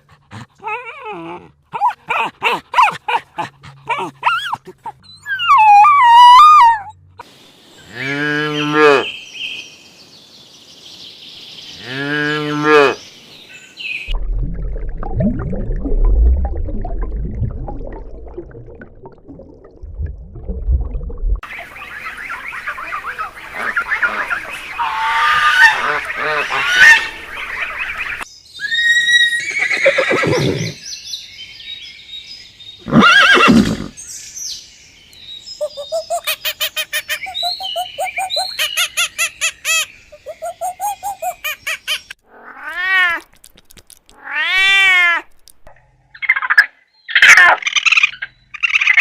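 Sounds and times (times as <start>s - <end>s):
animal calls: 0.3s - 6.9s, 22.0s - 28.0s.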